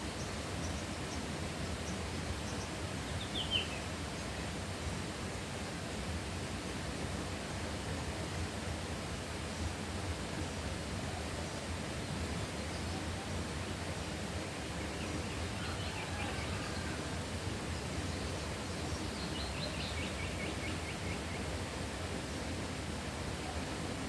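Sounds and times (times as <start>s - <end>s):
steady outdoor noise: 0.0s - 24.0s
faint bird calls: 15.3s - 17.2s.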